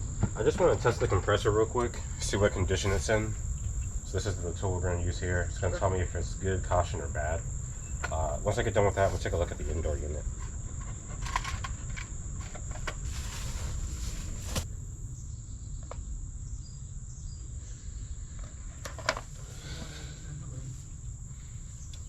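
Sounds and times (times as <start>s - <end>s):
low rumble: 0.0s - 10.4s
insects chirring: 0.0s - 22.0s.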